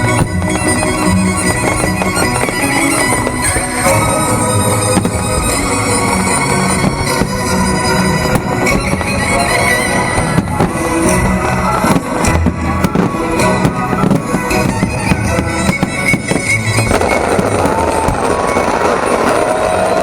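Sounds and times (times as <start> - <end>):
fireworks bangs: 0.0 - 20.0
loud show music: 0.0 - 20.0
whistling fireworks: 0.0 - 20.0.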